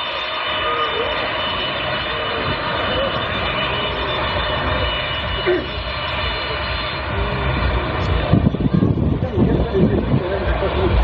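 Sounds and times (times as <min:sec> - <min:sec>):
high-pitched engine whine: 0:00.0 - 0:11.0
jet engines rumbling: 0:00.0 - 0:11.0.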